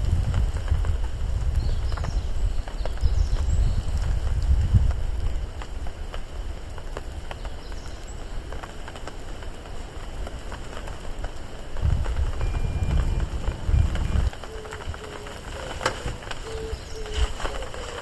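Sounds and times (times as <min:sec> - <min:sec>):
soft steady hiss: 0:00.0 - 0:18.0
low rumble: 0:11.8 - 0:14.4.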